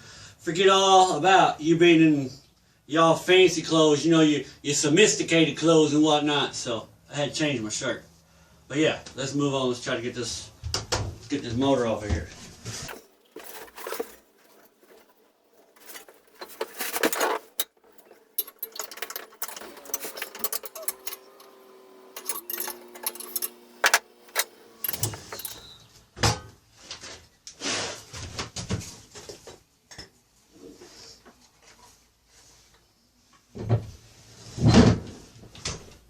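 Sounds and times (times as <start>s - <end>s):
metal tools clinking: 12.9s - 25.8s.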